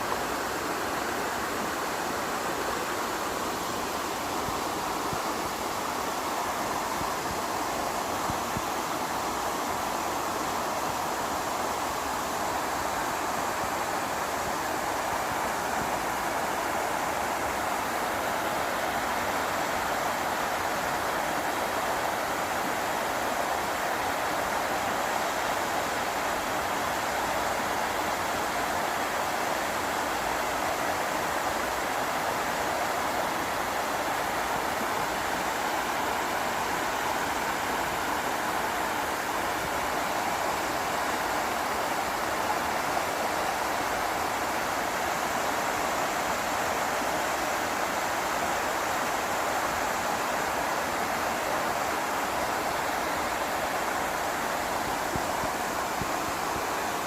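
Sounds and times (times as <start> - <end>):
waterfall rushing and splashing: 0.0 - 57.0.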